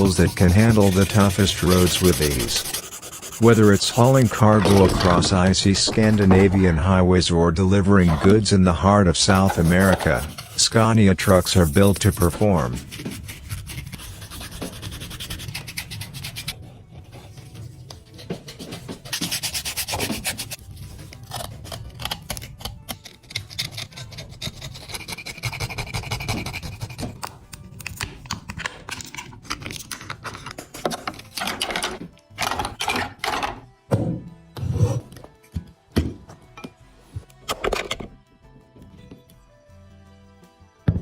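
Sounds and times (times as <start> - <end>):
sanding metal: 0.0 - 6.6, 9.3 - 16.6, 19.0 - 20.6
background music: 0.0 - 41.0.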